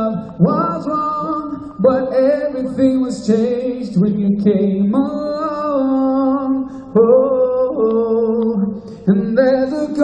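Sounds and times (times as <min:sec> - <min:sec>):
man singing slow love song: 0:00.0 - 0:10.0
singer breath: 0:06.6 - 0:07.0.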